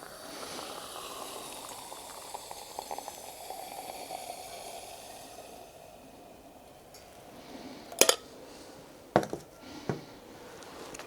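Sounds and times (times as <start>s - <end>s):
coffee pouring into a cup: 0.0s - 6.6s.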